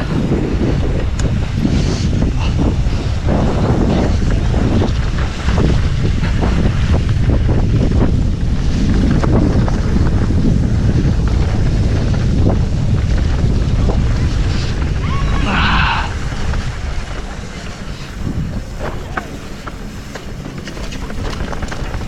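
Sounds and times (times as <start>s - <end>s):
wind rushing over microphone: 0.0s - 22.0s
bike knocks and rattles: 16.6s - 22.0s.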